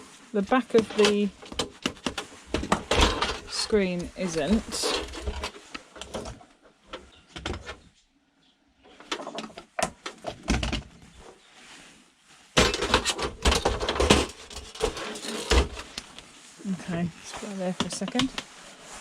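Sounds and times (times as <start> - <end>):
monitor parts clicking and scraping: 0.5 - 7.8, 12.6 - 16.4, 17.2 - 19.0
clattering: 0.7 - 6.3, 12.6 - 16.1.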